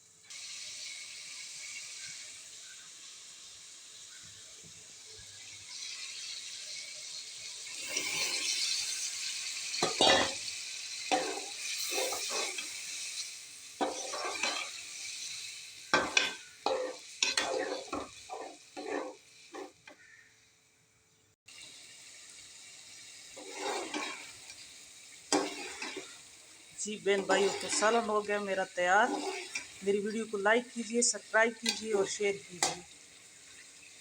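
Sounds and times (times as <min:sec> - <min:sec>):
curry sizzling in a pan: 0:00.0 - 0:34.0
metal spoon scraping a pan: 0:07.7 - 0:20.0, 0:23.3 - 0:24.7, 0:25.3 - 0:30.4, 0:31.5 - 0:33.6.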